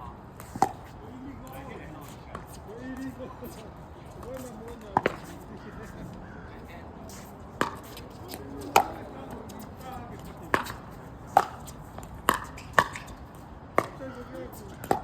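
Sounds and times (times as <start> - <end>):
paddles hitting plastic ball: 14.8 - 15.0.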